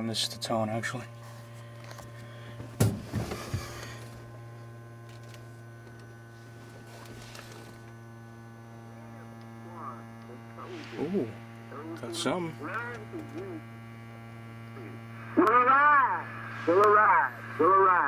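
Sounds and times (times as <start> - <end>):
car radio hum while tuning: 0.0 - 18.0
voice snatches on radio: 9.6 - 13.7.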